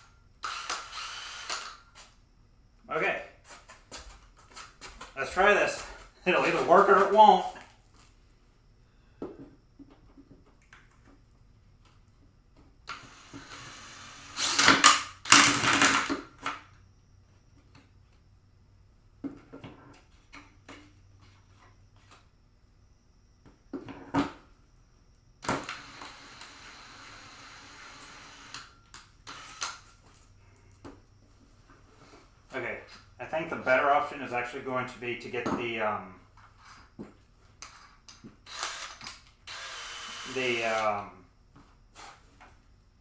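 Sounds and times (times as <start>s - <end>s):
drill cutting with hole saw: 0.4s - 1.9s, 12.9s - 16.2s, 25.4s - 29.9s, 38.5s - 41.0s.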